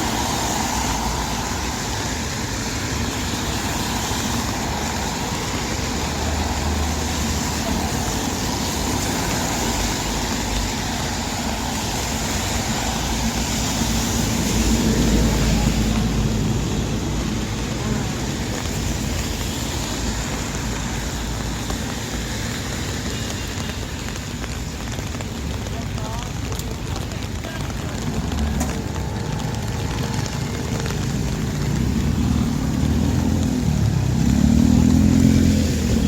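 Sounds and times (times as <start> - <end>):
rain hissing: 0.0 - 36.0
tyres on wet road: 0.0 - 36.0
vehicles passing: 0.0 - 36.0.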